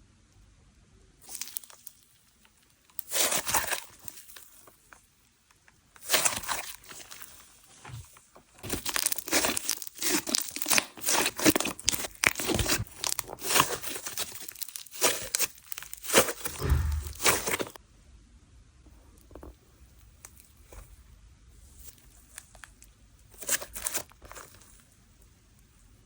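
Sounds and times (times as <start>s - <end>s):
gritty slime crackling: 1.2s - 5.0s, 5.9s - 17.8s.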